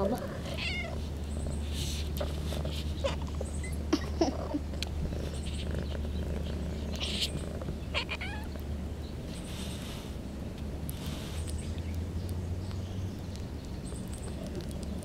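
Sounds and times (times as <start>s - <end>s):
low purr: 0.0s - 8.6s
kittens mewing: 0.1s - 8.6s.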